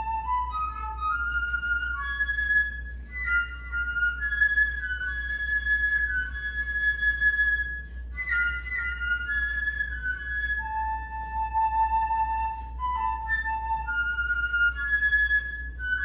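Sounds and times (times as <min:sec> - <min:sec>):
concert flute playing: 0:00.0 - 0:16.0
steady low hum: 0:00.0 - 0:16.0.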